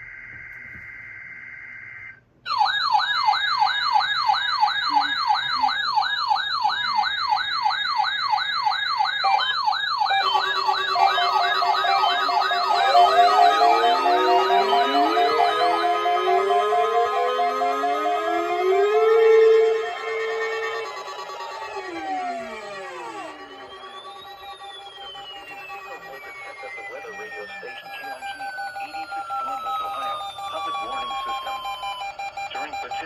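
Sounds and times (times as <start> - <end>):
alarm tones and beeps: 0.0 - 33.0
electronic siren warbling: 0.0 - 33.0
digital alert header tone: 9.0 - 33.0.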